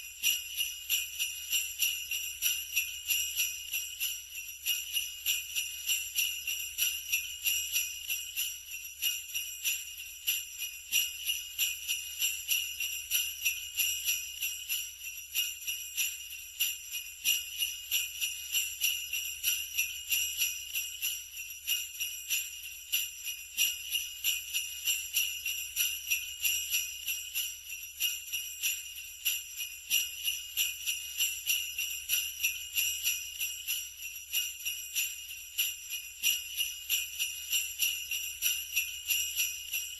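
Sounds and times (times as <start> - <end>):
sleigh bells jingling: 0.0 - 39.9.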